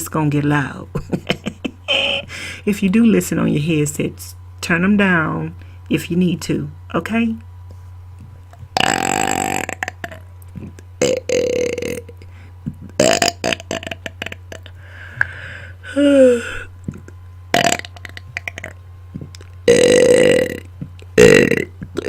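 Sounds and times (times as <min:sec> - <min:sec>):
low electrical hum: 0:00.0 - 0:22.0
person belching: 0:08.7 - 0:12.2, 0:12.8 - 0:14.8, 0:16.0 - 0:22.0.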